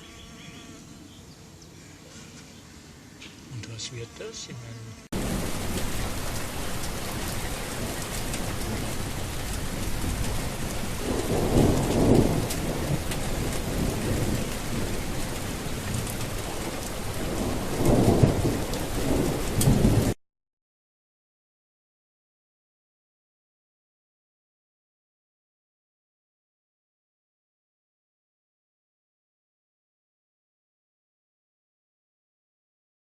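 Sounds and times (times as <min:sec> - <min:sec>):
heavy rain: 0:05.1 - 0:20.2
thunder rolling: 0:05.2 - 0:20.2.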